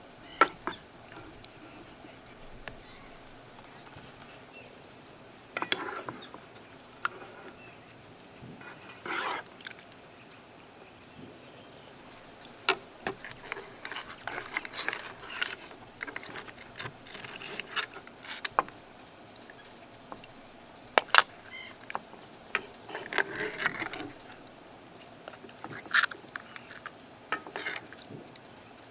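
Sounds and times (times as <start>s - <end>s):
small hard objects clattering: 12.0s - 24.6s.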